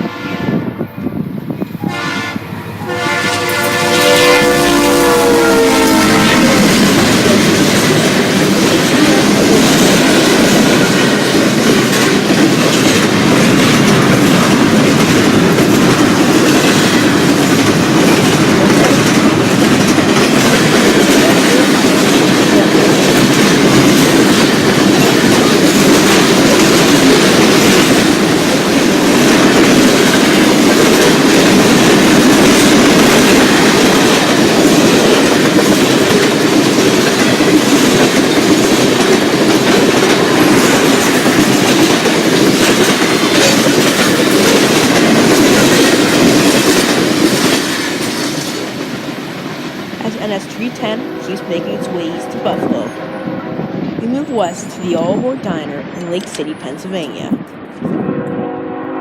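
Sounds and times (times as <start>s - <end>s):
train horn: 0.0s - 0.9s, 1.8s - 7.6s, 51.0s - 54.0s, 57.8s - 59.0s
freight train clattering over rails: 1.5s - 58.2s.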